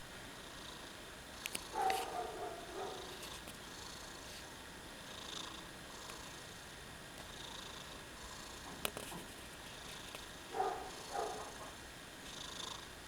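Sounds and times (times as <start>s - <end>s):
cat snoring: 2.8s - 4.3s, 5.0s - 6.7s, 7.3s - 8.8s, 10.6s - 12.9s.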